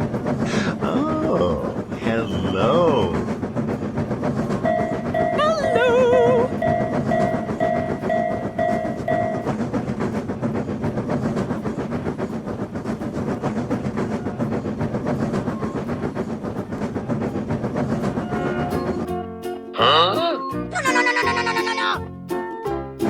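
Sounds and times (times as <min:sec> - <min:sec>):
passing train rumble and clatter: 0:00.0 - 0:19.8
railroad crossing bell ringing: 0:04.7 - 0:09.5.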